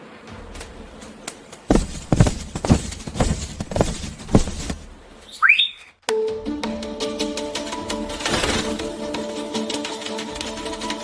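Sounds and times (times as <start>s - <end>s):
soft thuds: 0.3s - 5.2s.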